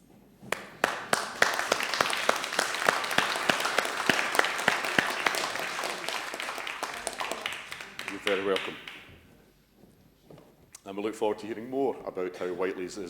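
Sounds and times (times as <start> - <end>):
congregation applauding: 0.5 - 9.2.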